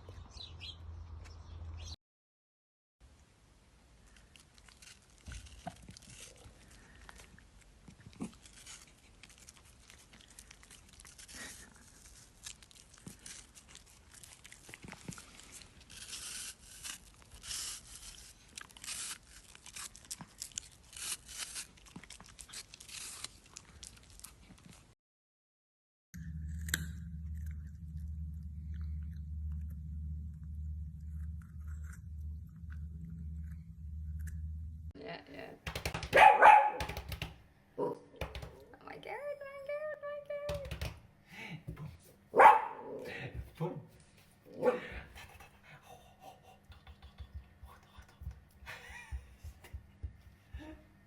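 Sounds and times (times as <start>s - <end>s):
dog chewing crunchy food: 4.0s - 24.9s.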